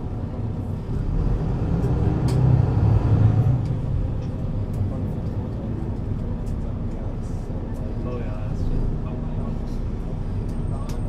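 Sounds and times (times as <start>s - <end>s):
bus diesel engine under load: 0.0s - 11.0s.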